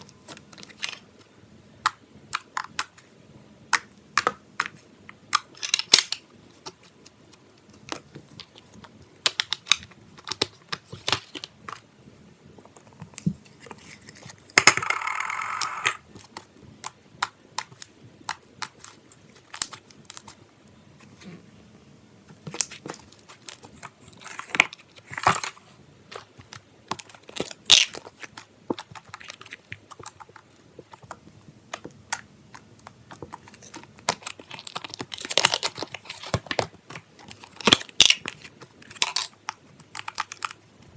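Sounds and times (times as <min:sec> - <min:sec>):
slime clicking and crackling: 0:26.2 - 0:40.6.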